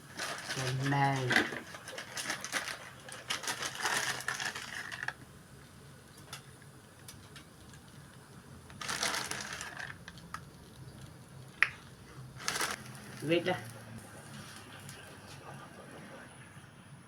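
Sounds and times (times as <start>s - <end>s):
sprinkles rattling from container: 0.1s - 5.2s, 8.8s - 11.1s.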